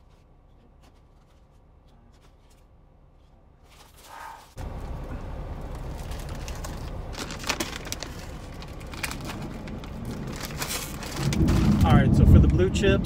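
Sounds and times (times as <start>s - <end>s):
sharp crackles: 3.8s - 12.7s
heavy rain on a truck cab: 4.6s - 13.0s
thunder rumbling: 4.6s - 13.0s.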